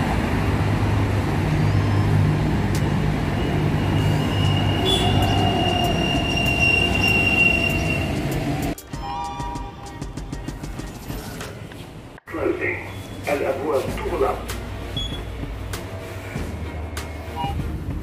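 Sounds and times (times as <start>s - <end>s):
metro train rumbling: 0.0s - 10.8s
high wheel squeal: 3.4s - 8.4s.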